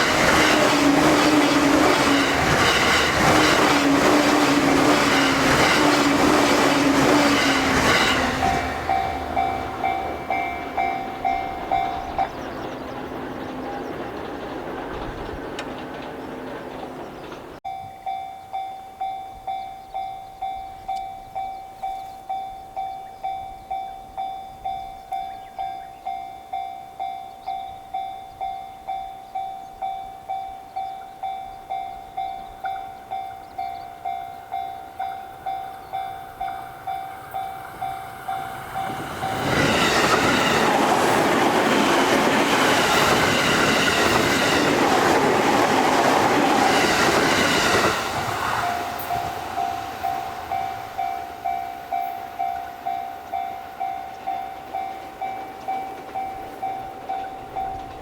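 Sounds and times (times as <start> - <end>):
level-crossing alarm bell ringing: 0.0 - 14.2, 17.6 - 58.0
train wheels clattering on rails: 0.0 - 18.6, 30.7 - 58.0.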